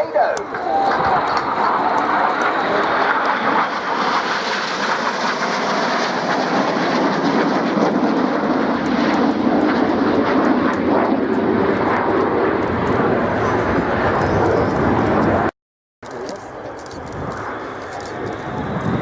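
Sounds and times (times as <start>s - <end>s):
jet aircraft flying past: 0.0s - 15.5s, 16.1s - 19.0s.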